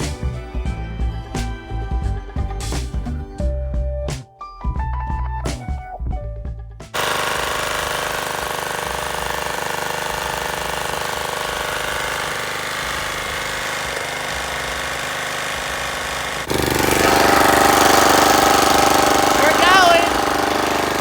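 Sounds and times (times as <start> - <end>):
lawn mower engine running: 7.0 - 21.0.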